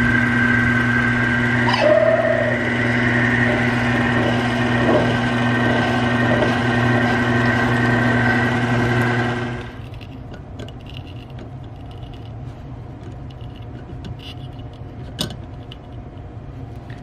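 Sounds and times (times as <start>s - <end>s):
electric machine humming and whining: 0.0s - 9.8s.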